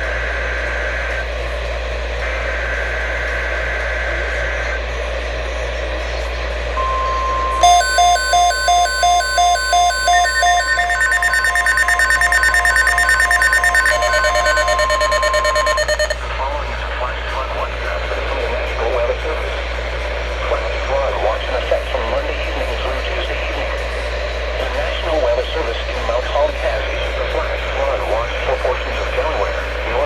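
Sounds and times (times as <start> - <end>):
alert receiver alarm beeping: 6.8 - 16.2
data tone bursts: 6.8 - 16.2
steady warning tone: 6.8 - 16.2.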